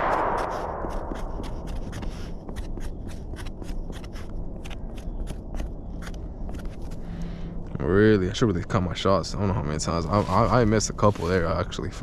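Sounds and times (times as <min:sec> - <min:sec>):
crunching footsteps: 0:00.0 - 0:07.3
low steady rumble: 0:00.0 - 0:12.0.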